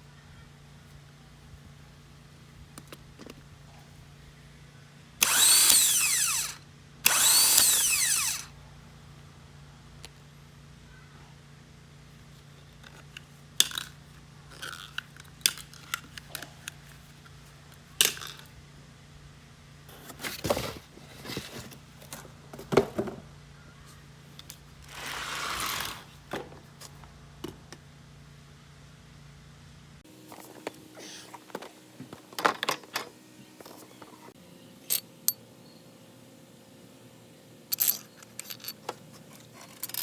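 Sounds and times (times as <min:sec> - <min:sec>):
faint steady hum: 0:00.0 - 0:25.1, 0:25.7 - 0:40.0
rustling scrape: 0:19.8 - 0:22.4, 0:24.8 - 0:27.0, 0:38.3 - 0:40.0
metal tools clinking: 0:30.4 - 0:34.2, 0:34.8 - 0:35.4, 0:37.7 - 0:40.0.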